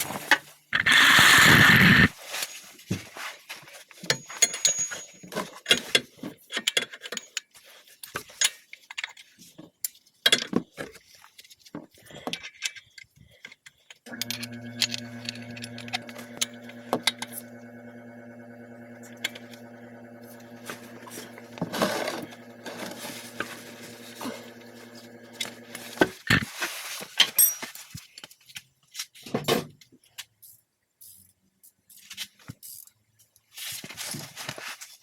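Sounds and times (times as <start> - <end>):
metallic clicks and clinks: 4.1 - 5.8
steady even hum: 14.2 - 26.1.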